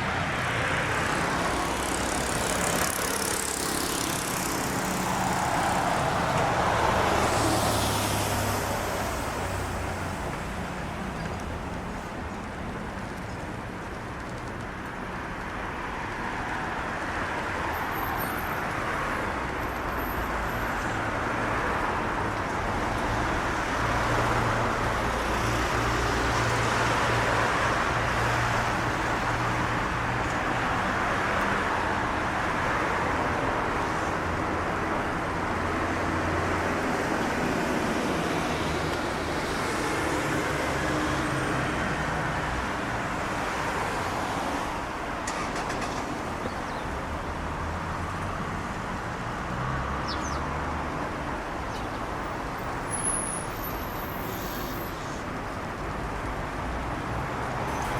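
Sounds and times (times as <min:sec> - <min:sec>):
road traffic noise: 0:00.0 - 0:57.9.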